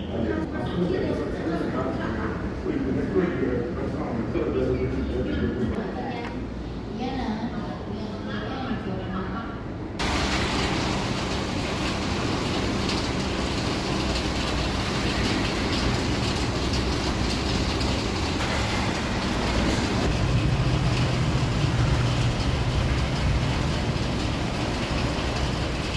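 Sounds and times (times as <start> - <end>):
road noise: 9.9 - 25.9
vehicle engine rumbling: 10.0 - 25.9.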